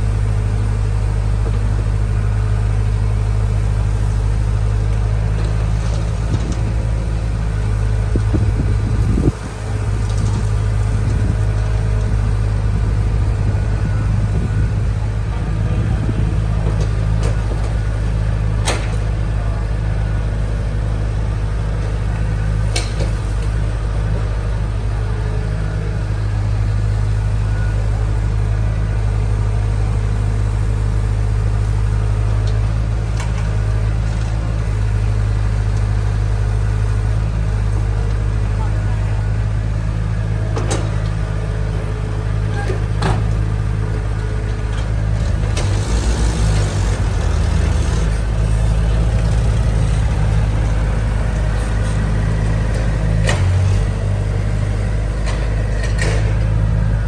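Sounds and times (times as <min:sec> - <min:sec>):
heavy diesel engine droning: 0:00.0 - 0:40.4, 0:41.3 - 0:57.0.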